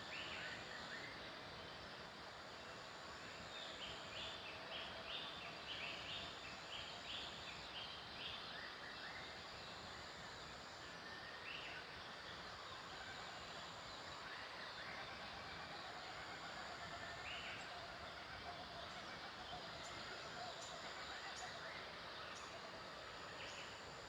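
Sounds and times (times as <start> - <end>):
background hiss: 0.0 - 24.0.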